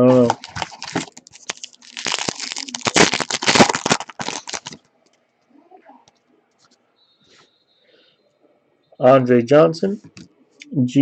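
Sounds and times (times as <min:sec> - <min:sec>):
wrapper crinkling and tearing: 0:00.0 - 0:04.9.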